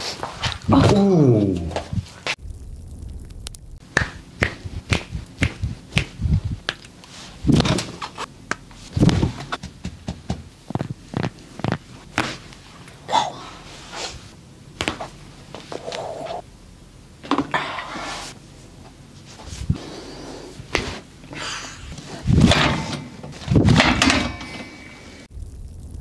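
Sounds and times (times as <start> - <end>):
sharp cracks and taps: 3.9 - 7.1.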